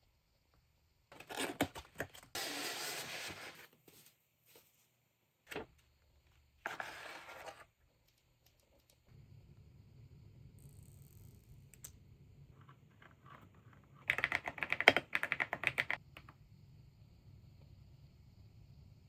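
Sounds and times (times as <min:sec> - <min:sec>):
box sliding against cardboard: 0:02.4 - 0:04.0, 0:06.7 - 0:07.6.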